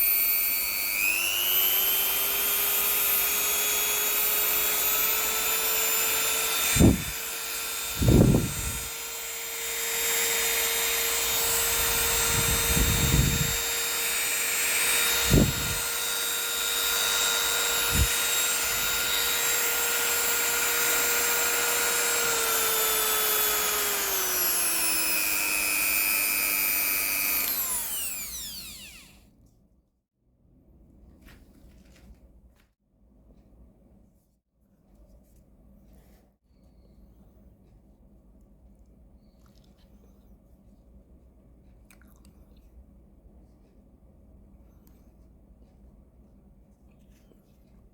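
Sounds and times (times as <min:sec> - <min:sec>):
rotary tool motor whining: 0:00.0 - 0:29.2.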